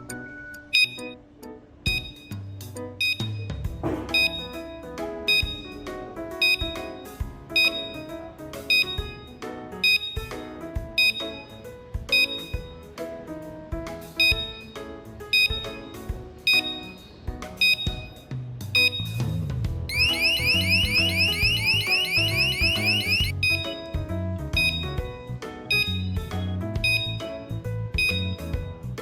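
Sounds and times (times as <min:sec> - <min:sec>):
music with steady beat: 0:00.0 - 0:01.2, 0:01.9 - 0:29.0
high ringing notes: 0:00.8 - 0:01.2, 0:01.9 - 0:02.4, 0:03.0 - 0:08.0, 0:19.9 - 0:23.9, 0:25.7 - 0:26.2.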